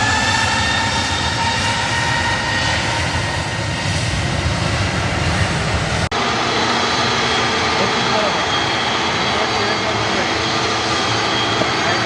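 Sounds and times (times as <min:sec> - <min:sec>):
jet engines running: 0:00.0 - 0:12.0.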